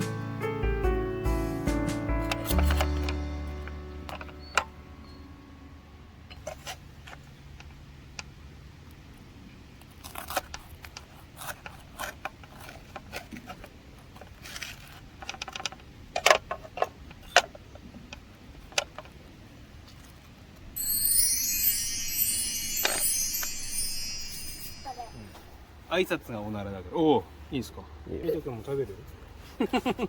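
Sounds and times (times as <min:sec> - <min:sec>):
background music: 0:00.0 - 0:06.4, 0:20.8 - 0:25.6.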